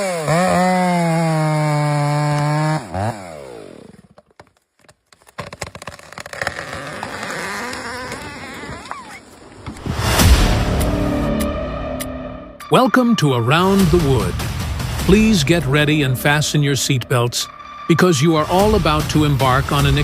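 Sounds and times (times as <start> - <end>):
chainsaw revving: 0.0 - 4.2, 6.3 - 8.9
chainsaw cutting: 0.0 - 4.5, 5.2 - 9.2.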